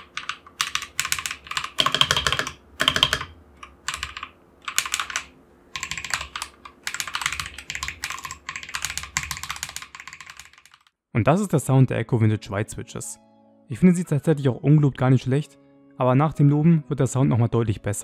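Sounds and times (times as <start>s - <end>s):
fast mechanical keyboard typing: 0.0s - 10.9s.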